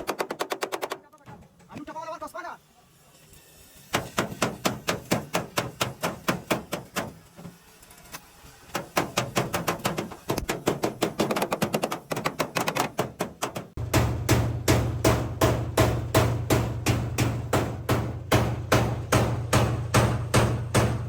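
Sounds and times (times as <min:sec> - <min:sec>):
hammer blows on metal: 0:13.0 - 0:21.0.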